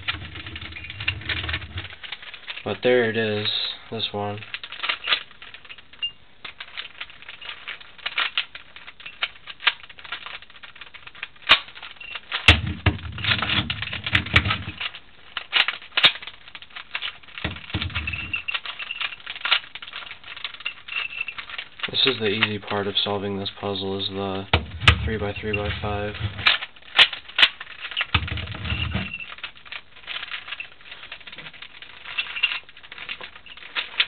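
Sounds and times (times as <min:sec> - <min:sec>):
low rumbling: 0:00.0 - 0:02.1.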